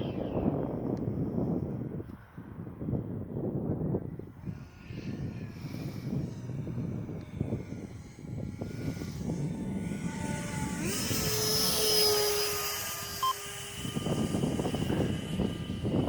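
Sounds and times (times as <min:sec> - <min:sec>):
wind buffeting microphone: 0:00.0 - 0:16.0
electric jet motor whining: 0:05.0 - 0:16.0.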